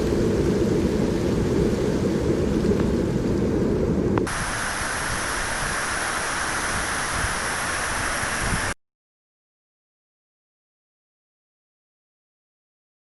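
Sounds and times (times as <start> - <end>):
waterfall rushing: 4.3 - 8.8.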